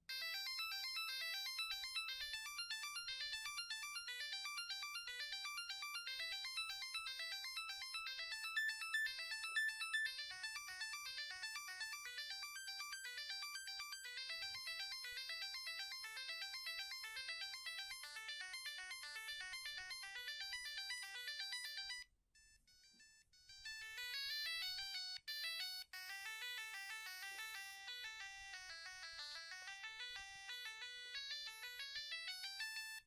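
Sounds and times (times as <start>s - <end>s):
beeping electronic ringtone: 0.1s - 33.0s
ringtone with sliding notes: 0.1s - 33.0s.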